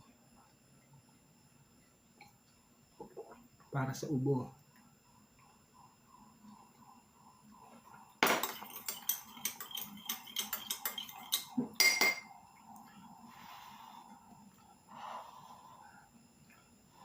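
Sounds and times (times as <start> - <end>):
spoon clinking against cup: 8.2 - 12.3.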